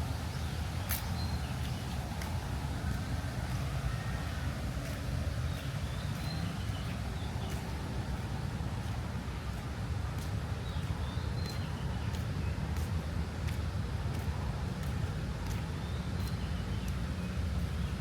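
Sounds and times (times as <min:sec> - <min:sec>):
light ticks: 0:00.8 - 0:03.7, 0:08.8 - 0:17.7.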